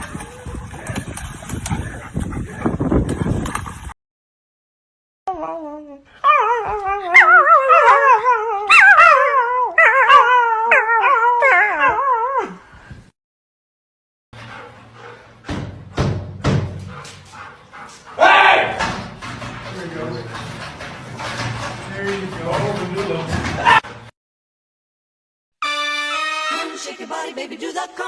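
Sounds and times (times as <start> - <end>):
dog howling: 6.2 - 12.6, 18.2 - 18.8.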